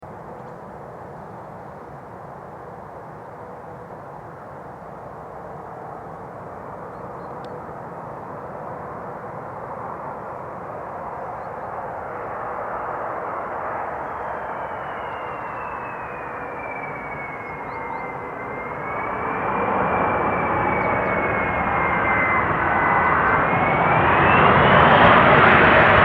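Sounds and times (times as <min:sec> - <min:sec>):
jet engines rushing: 0:09.6 - 0:26.0.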